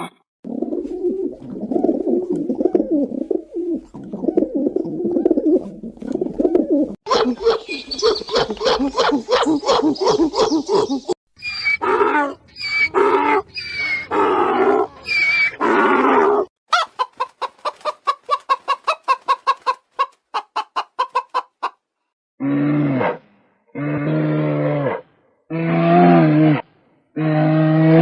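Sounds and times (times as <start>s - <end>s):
low deep animal call: 22.4s - 28.0s.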